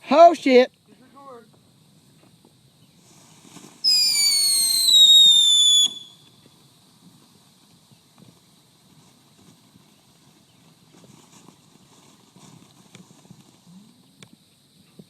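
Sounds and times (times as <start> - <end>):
faint hiss: 0.0 - 15.0
whistling firework: 3.2 - 6.4.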